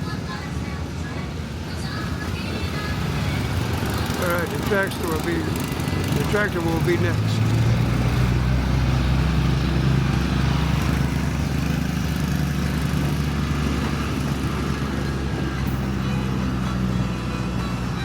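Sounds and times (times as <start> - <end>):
engine droning: 0.0 - 18.0.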